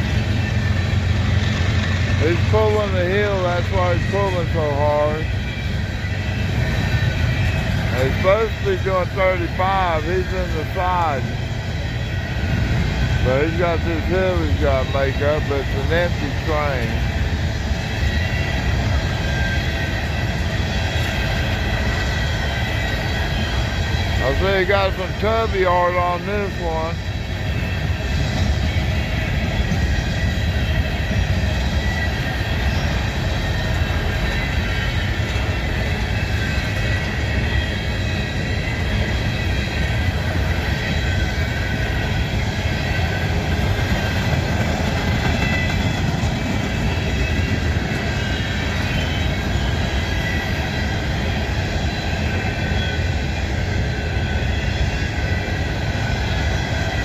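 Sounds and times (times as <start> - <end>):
train wheels rumbling on rail: 0.0 - 57.0.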